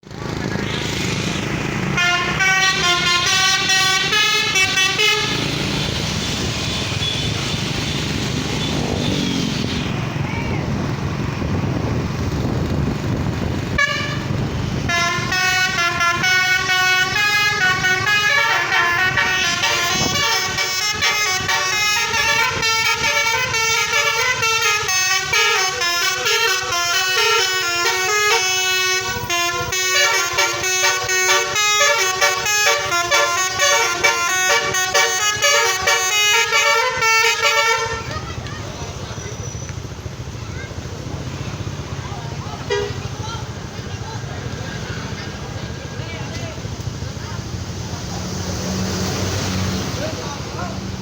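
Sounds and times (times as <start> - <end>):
road and engine rumble: 0.0 - 51.0
multi-tone horn melody: 1.8 - 9.8, 13.7 - 38.4, 42.6 - 43.2.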